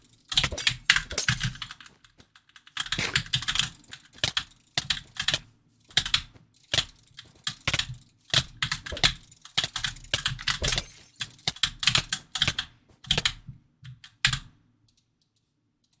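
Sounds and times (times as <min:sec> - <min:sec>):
keyboard typing: 0:00.3 - 0:13.4.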